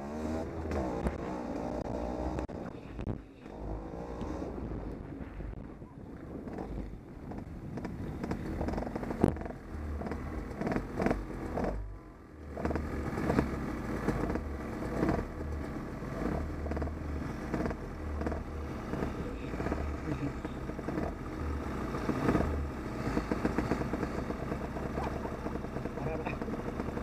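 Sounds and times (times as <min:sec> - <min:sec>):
motorcycle engine running: 0:00.0 - 0:27.0
knocks and rattles: 0:06.4 - 0:11.8, 0:12.5 - 0:21.2.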